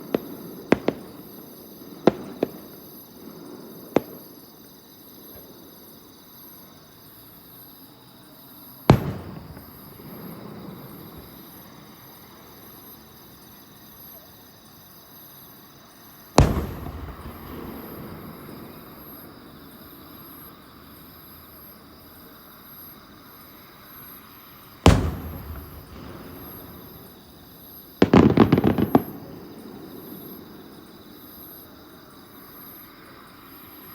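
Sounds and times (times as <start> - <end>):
fireworks crackling bursts: 0.0 - 5.6, 8.8 - 13.4, 16.3 - 20.4, 24.6 - 31.6
fireworks sharp pops: 0.0 - 5.6, 8.9 - 11.7, 16.4 - 19.3, 24.8 - 31.5
fireworks booms with rolling rumble: 0.0 - 6.0, 8.8 - 13.4, 16.4 - 20.6, 24.8 - 31.7.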